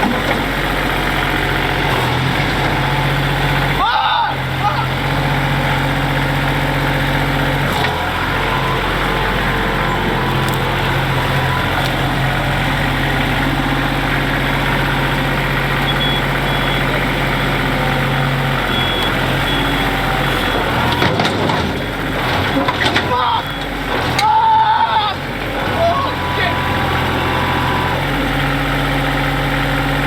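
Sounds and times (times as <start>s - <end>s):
vehicle engine under load: 0.0s - 30.0s
short high electronic beeps: 15.9s - 16.8s.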